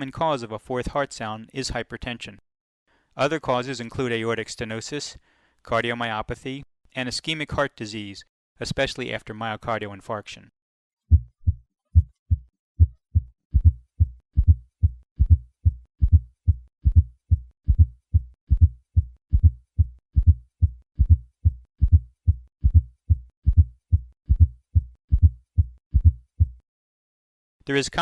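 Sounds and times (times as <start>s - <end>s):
heartbeat through stethoscope: 11.1s - 26.6s.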